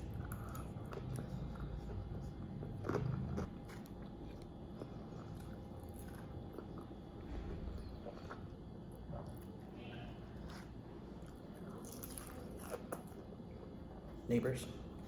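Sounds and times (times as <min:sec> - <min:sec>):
person biting and chewing: 0:10.4 - 0:13.1.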